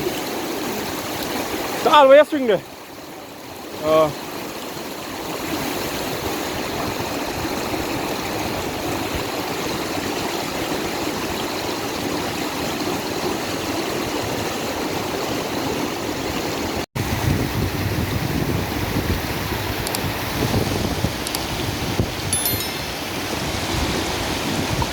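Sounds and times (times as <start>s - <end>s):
river water rushing: 21.2s - 24.9s.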